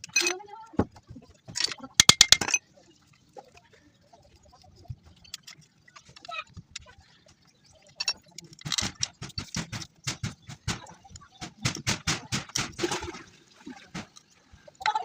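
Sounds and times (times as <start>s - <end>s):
metal parts knocking and clicking: 1.5s - 2.6s, 7.8s - 12.8s.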